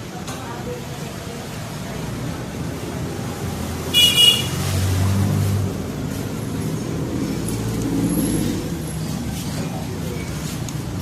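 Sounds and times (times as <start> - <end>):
horn beep: 3.9 - 4.6.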